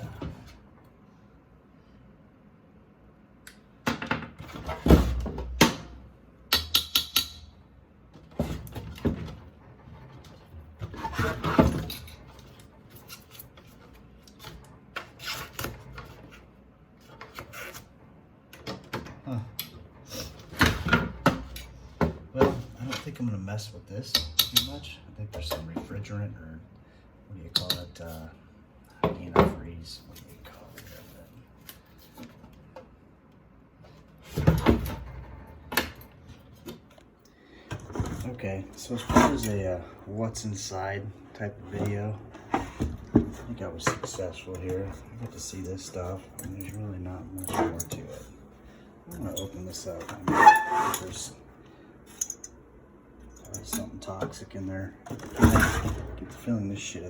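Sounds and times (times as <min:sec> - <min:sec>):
knocks and clunk of parts: 0:03.8 - 0:07.5, 0:20.4 - 0:23.1, 0:33.8 - 0:39.6.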